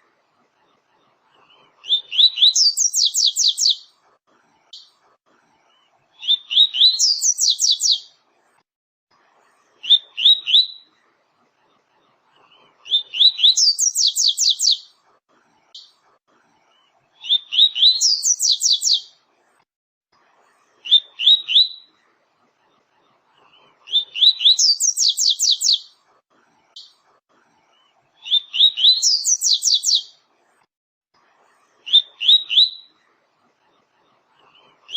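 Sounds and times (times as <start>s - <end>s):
bird singing whistled notes: 2.1s - 3.8s, 6.2s - 8.1s, 13.2s - 14.8s, 17.3s - 19.1s, 24.0s - 25.9s, 28.3s - 30.1s.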